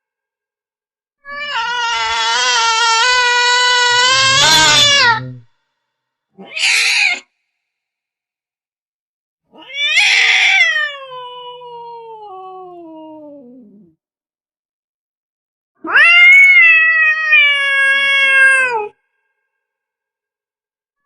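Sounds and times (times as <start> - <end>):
angry cat meowing: 1.3 - 5.4, 6.4 - 7.2, 9.6 - 11.7, 15.8 - 18.9.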